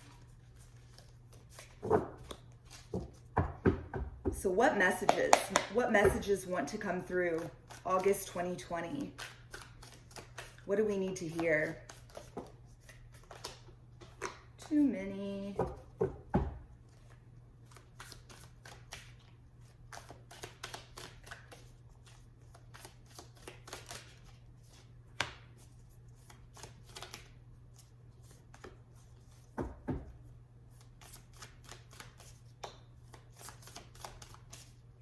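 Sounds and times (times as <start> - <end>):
cards being shuffled: 0.0 - 3.3, 7.4 - 14.6, 16.9 - 29.6, 30.7 - 34.8.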